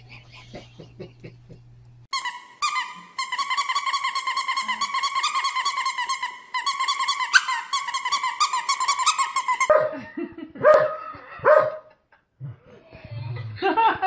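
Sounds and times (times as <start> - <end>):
dog barking: 9.7 - 10.0, 10.6 - 11.9.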